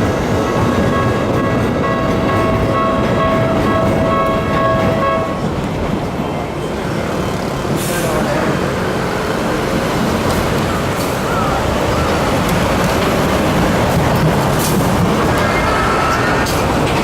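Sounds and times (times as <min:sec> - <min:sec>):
rumble of passing vehicles: 0:06.6 - 0:15.4.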